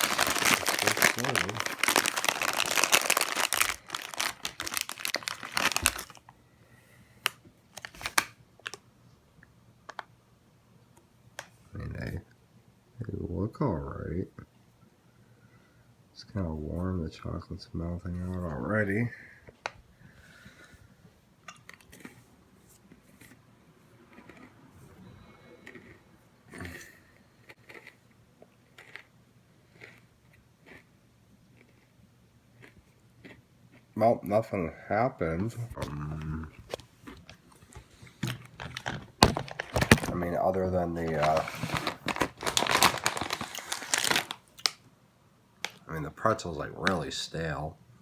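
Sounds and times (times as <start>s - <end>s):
snack bag crinkling: 0.0s - 6.4s, 7.2s - 8.8s, 35.8s - 44.8s, 45.6s - 45.8s.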